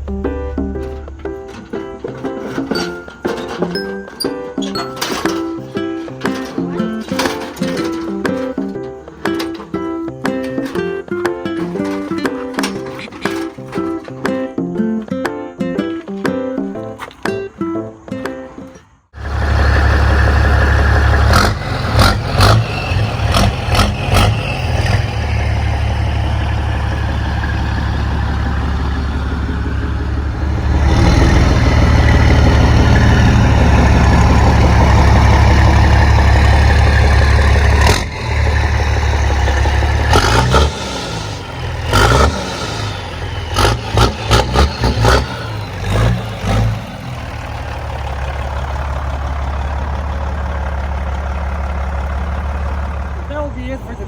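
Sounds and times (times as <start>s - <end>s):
sharp knocks and clatters: 0.0s - 53.2s
diesel truck engine droning: 0.0s - 54.0s.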